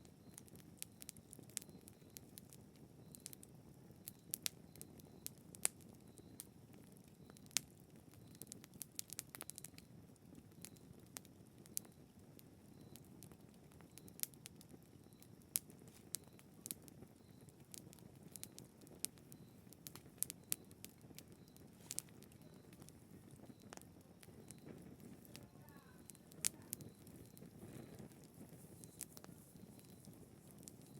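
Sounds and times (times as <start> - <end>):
campfire crackling and popping: 0.0 - 30.9
faint low rumble: 19.1 - 30.9.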